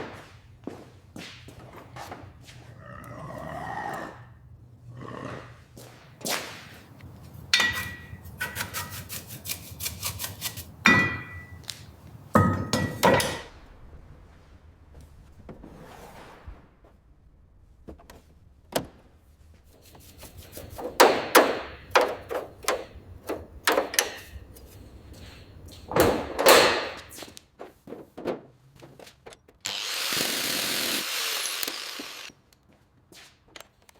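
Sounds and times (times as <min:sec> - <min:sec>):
hand tools clanking on metal: 0:07.1 - 0:13.5, 0:20.1 - 0:27.2
metal scraping clatter: 0:19.8 - 0:27.2.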